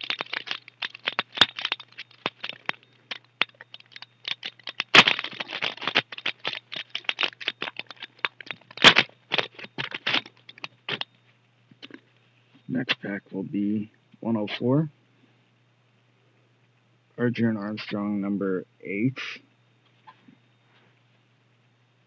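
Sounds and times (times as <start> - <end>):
wrapper tearing and crinkling: 0.0 - 11.0.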